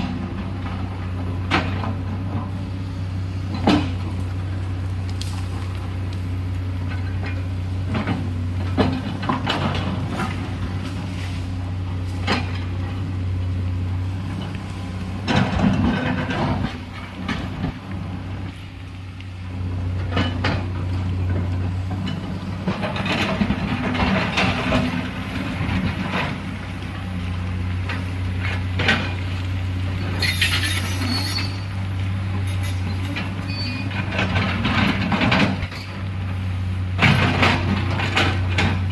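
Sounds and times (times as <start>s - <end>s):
diesel engine of earthmoving machine: 0.0s - 38.9s
metal clanks and knocks: 15.2s - 17.8s, 20.0s - 26.4s, 33.0s - 36.0s, 36.9s - 38.9s.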